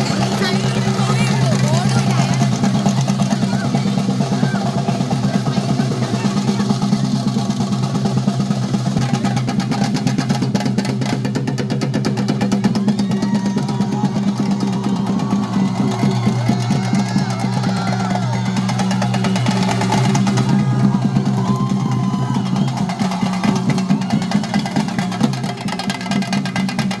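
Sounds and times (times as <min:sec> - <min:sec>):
drums in fast roll: 0:00.0 - 0:27.0.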